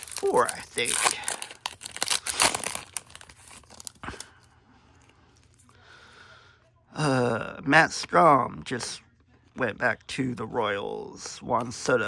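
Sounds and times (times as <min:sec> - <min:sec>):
card pack wrapper tearing: 0:00.0 - 0:04.3.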